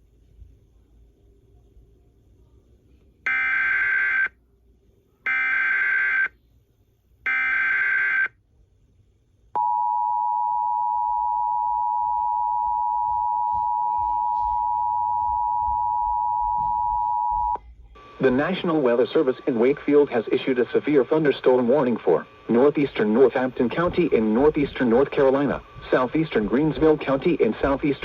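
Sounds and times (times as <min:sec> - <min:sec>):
two-tone attention signal: 0:09.6 - 0:17.6.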